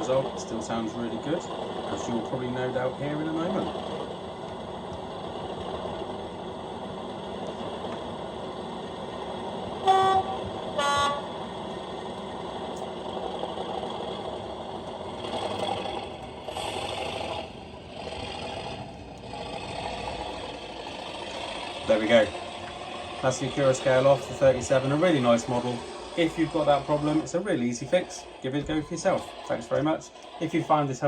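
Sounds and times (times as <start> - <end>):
model diesel engine sound: 0.0 - 31.0
horn toots: 9.8 - 11.5.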